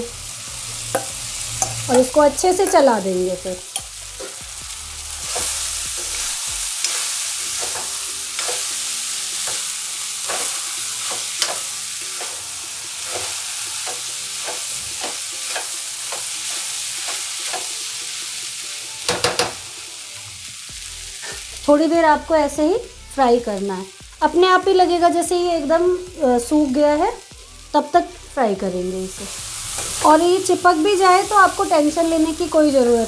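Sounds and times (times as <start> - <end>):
ginger sizzling in hot fat: 0.0 - 33.0
utensil scraping a pan: 3.6 - 17.7, 21.2 - 21.7.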